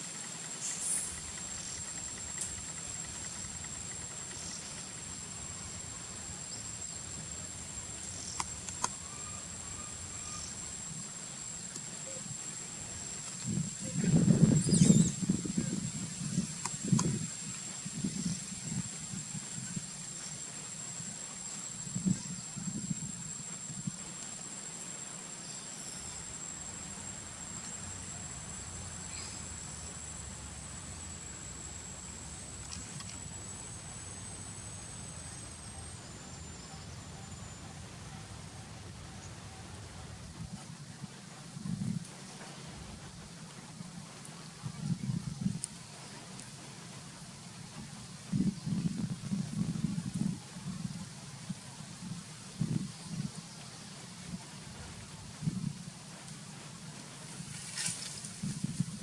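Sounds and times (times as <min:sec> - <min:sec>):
high-pitched insect drone: 0:00.0 - 0:39.3, 0:55.0 - 0:59.0.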